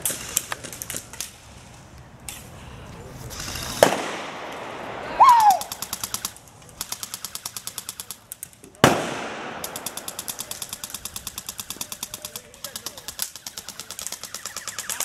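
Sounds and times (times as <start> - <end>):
airsoft guns full-auto firing: 3.7 - 15.0.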